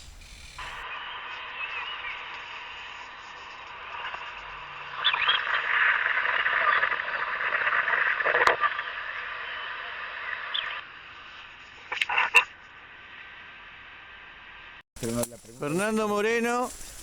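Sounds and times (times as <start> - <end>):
short chirps: 0.0 - 0.8
frogs and insects calling: 0.0 - 17.0.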